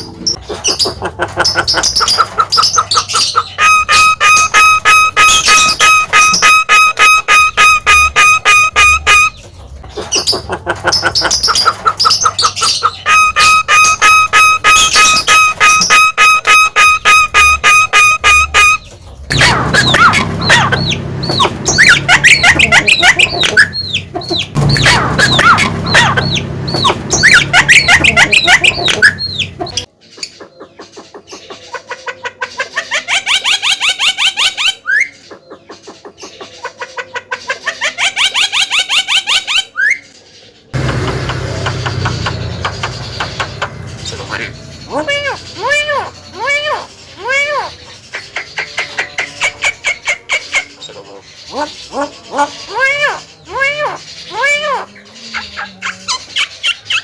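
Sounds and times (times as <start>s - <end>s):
bird chattering song: 0.0s - 57.0s
myna calling: 0.1s - 29.9s, 40.8s - 56.2s
bird upward whistle: 3.6s - 9.4s, 13.1s - 29.5s.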